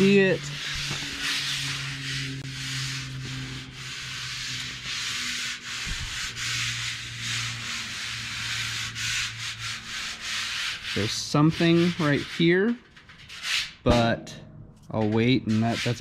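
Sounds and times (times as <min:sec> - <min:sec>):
hand rubbing sheet metal: 0:00.0 - 0:16.0
low hum: 0:13.9 - 0:15.3.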